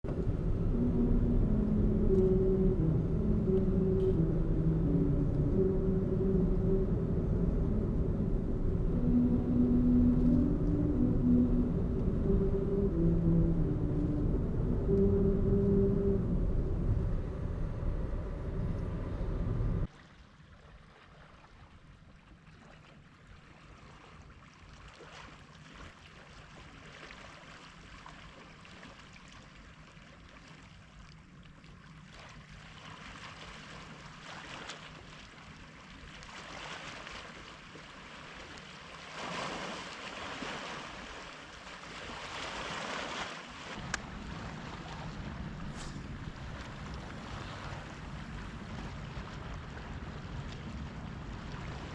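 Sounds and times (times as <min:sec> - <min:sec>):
loud low rumble: 0:00.0 - 0:19.9
sea waves on shore: 0:19.1 - 0:51.9.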